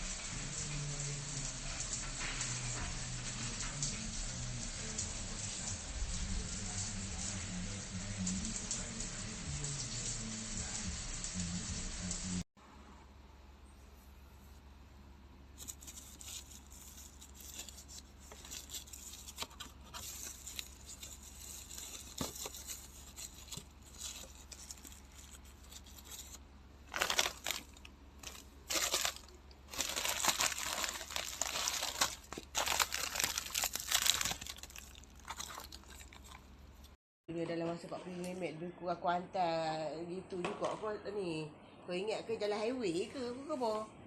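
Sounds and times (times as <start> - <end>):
crinkling and rustling: 15.5 - 37.0.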